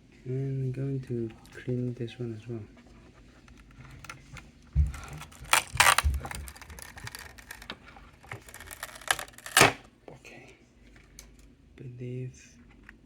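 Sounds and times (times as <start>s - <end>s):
hands handling laptop parts: 3.4s - 9.8s.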